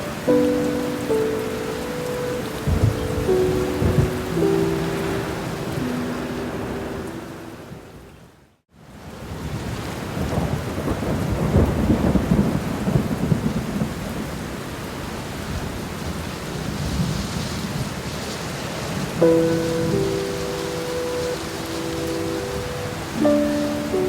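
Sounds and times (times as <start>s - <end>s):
soft musical tones: 0.0s - 8.3s, 19.2s - 24.0s
steady rainfall: 0.0s - 24.0s
low rumble of thunder: 2.6s - 5.2s, 9.4s - 14.6s.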